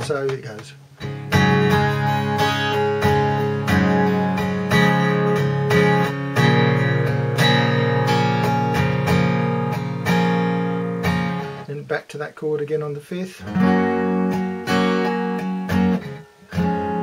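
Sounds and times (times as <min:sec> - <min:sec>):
guitar chords strummed: 0:00.0 - 0:17.0.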